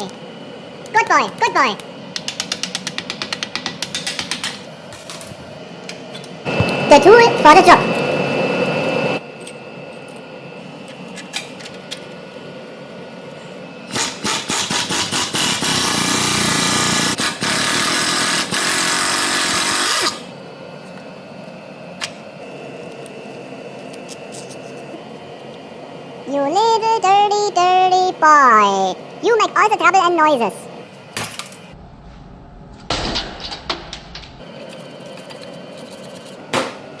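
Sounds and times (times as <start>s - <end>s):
power tool running: 13.9s - 20.3s.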